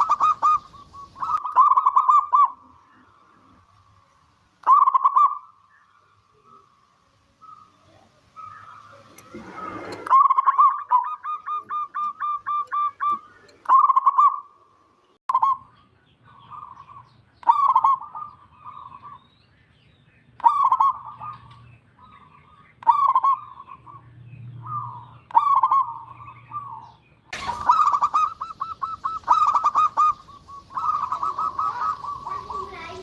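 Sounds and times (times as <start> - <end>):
dove cooing: 0.0 - 3.7, 4.6 - 5.6, 7.4 - 14.5, 16.3 - 19.2, 20.4 - 22.1, 22.8 - 24.0, 24.6 - 33.0.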